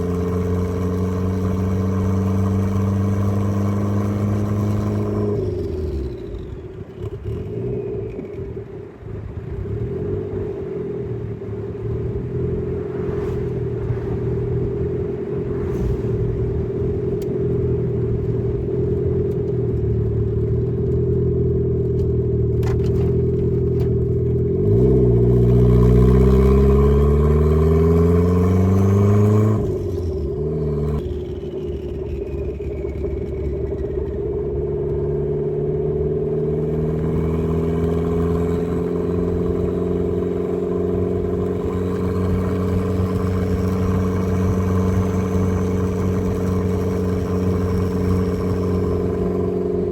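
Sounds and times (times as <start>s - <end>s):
car engine revving: 0.0s - 49.9s.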